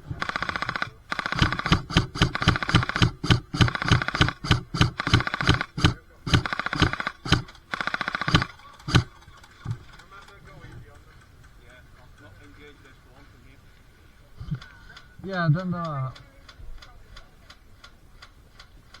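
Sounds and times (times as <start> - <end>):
airsoft gun firing: 0.0 - 9.1.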